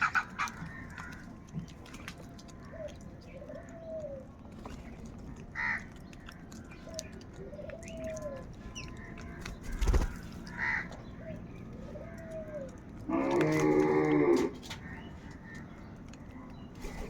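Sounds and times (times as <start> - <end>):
crows cawing: 0.0 - 1.3, 5.6 - 6.0, 9.0 - 11.1, 13.1 - 15.6.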